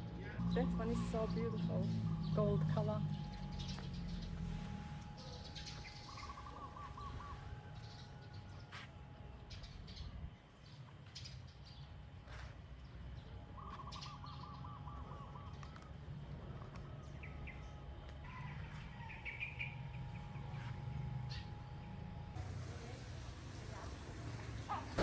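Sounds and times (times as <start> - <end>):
birds calling faintly: 0.4 - 16.2.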